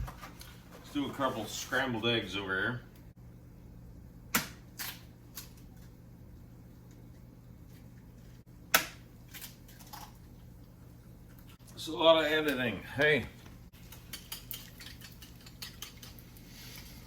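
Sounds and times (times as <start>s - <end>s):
eggs cracking against bowl: 8.7s - 11.5s, 13.8s - 16.5s.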